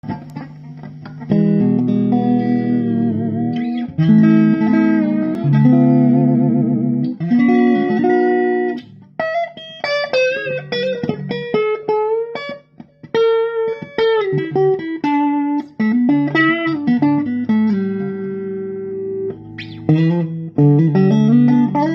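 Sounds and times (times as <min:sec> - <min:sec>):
electric guitar playing: 0:00.0 - 0:21.9.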